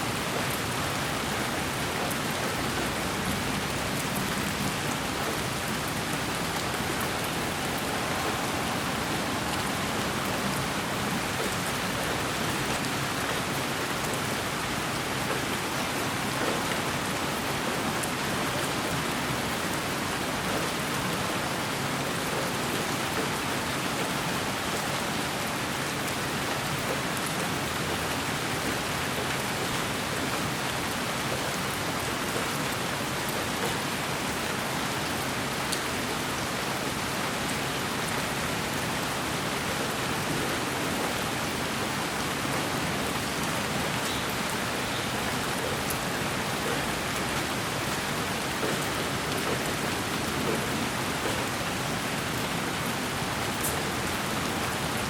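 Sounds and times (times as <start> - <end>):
white noise hiss: 5.8 - 12.8.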